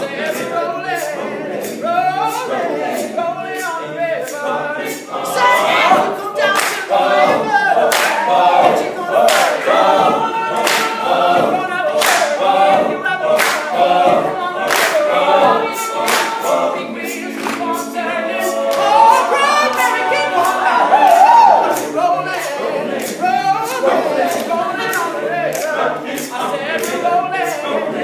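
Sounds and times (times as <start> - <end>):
men singing a cappella chords: 0.0 - 28.0
sharp percussive hits: 4.9 - 19.0.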